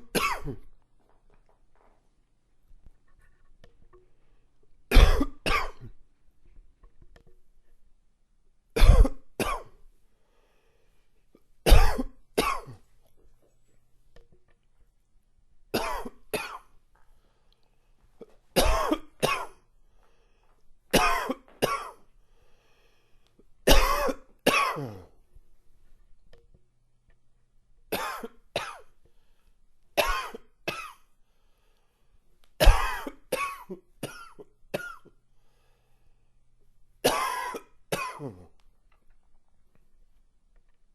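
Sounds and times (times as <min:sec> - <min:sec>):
man coughing: 0:00.0 - 0:00.7, 0:04.9 - 0:05.9, 0:11.7 - 0:12.8, 0:15.8 - 0:16.7, 0:21.0 - 0:22.0, 0:23.7 - 0:25.1, 0:32.6 - 0:35.1, 0:37.0 - 0:38.5.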